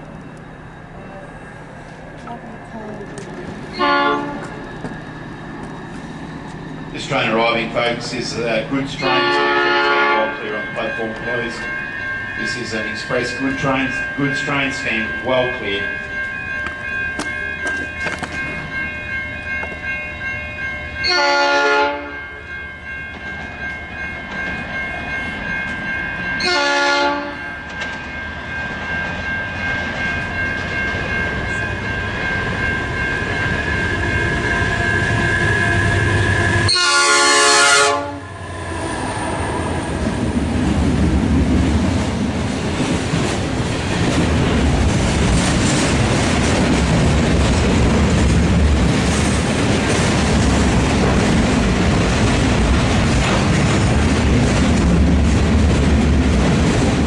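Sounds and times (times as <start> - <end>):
freight train rumbling past: 0.0 - 57.0
clattering train wheels: 1.6 - 36.6, 39.1 - 57.0
locomotive horn blasts: 3.7 - 4.6, 9.0 - 10.4, 21.0 - 22.2, 26.4 - 27.5, 35.5 - 38.4.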